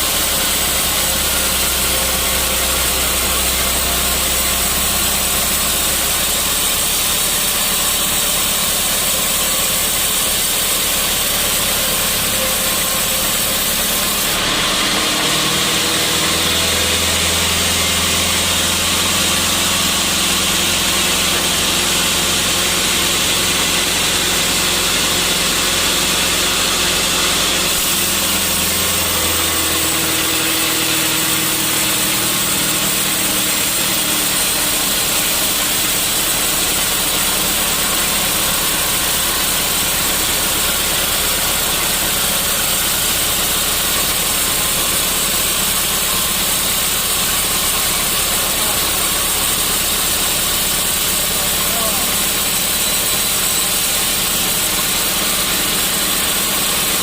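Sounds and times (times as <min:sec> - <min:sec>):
motor slowing down: 0:00.0 - 0:57.0
sawmill machinery running: 0:00.0 - 0:57.0.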